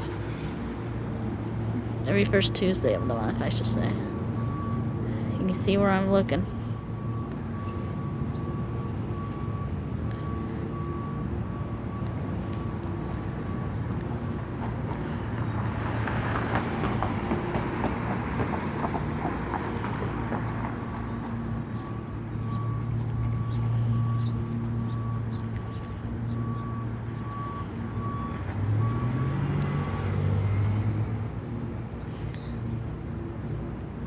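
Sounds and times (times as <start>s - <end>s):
reversing beeper: 2.0s - 12.8s, 21.1s - 30.6s.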